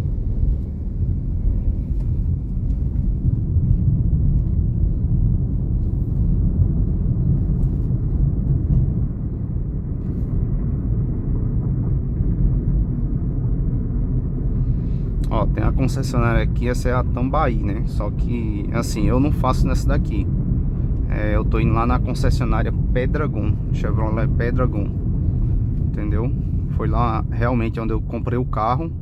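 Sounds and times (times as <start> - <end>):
car engine and road rumble: 0.0 - 29.0.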